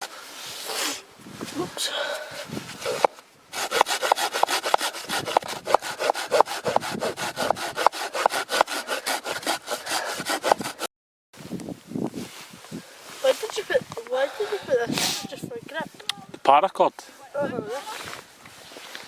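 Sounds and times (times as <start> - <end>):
hand saw cutting wood: 2.8 - 10.9.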